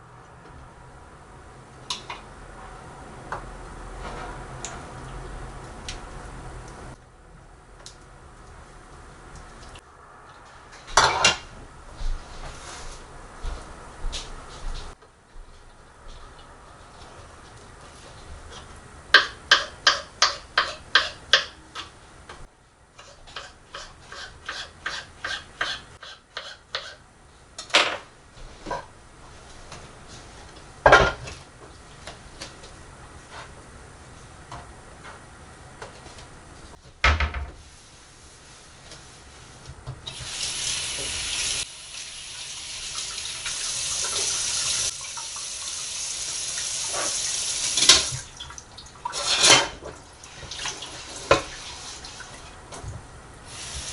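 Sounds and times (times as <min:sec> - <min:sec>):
tap water running into sink: 0:40.1 - 0:49.2.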